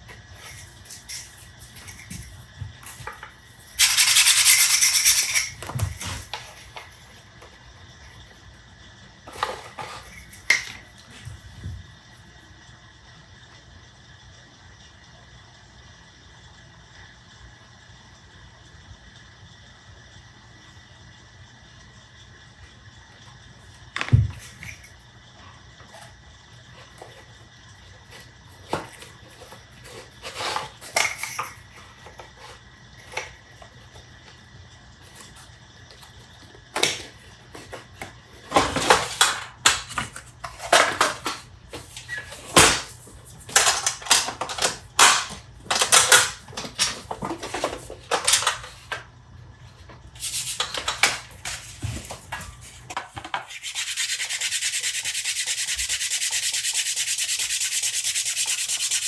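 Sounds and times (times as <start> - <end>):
sanding wood: 53.5 - 59.0.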